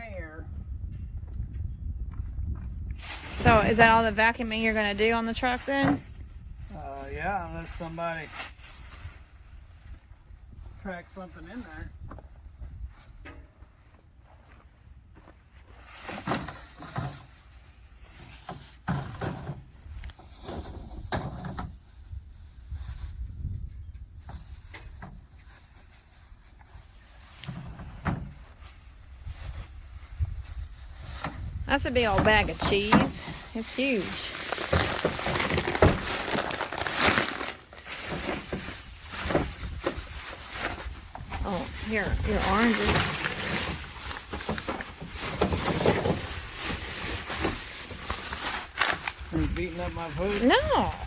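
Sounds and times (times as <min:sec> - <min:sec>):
plastic bags crinkling: 0:03.0 - 0:06.7, 0:25.5 - 0:51.0
rustling: 0:03.0 - 0:10.2, 0:15.6 - 0:23.2, 0:24.3 - 0:51.0.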